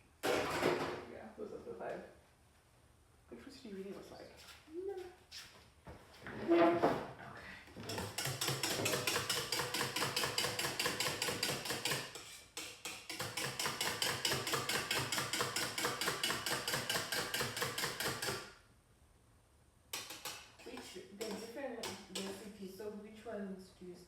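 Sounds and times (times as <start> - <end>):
utensil beating in mixing bowl: 7.8 - 18.4, 20.0 - 22.4.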